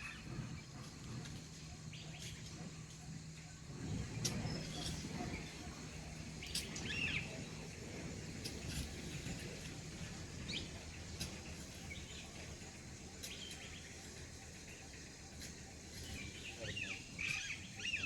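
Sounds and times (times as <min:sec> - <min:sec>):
birds chirping: 0:00.0 - 0:18.0
low background rumble: 0:00.0 - 0:18.0.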